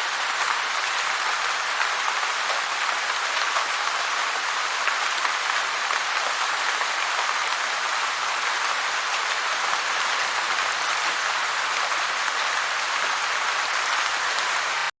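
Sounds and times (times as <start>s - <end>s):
heavy rain falling: 0.0s - 15.0s.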